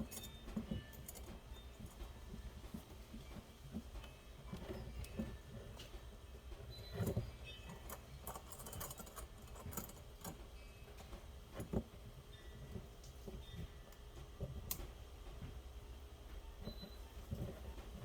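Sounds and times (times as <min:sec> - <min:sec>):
small metal parts clicking and rattling: 0:00.0 - 0:02.2, 0:06.8 - 0:10.5.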